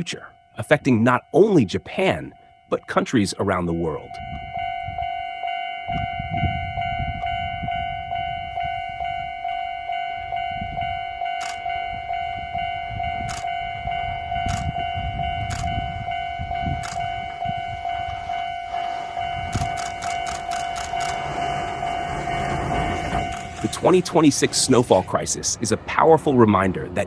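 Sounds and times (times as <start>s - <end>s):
level-crossing alarm ringing: 0.0s - 25.2s
passing train rumble: 3.8s - 27.0s
sharp clicks: 11.4s - 11.7s, 13.3s - 13.5s, 14.5s - 14.8s, 15.5s - 15.7s, 16.8s - 17.1s, 19.5s - 21.2s.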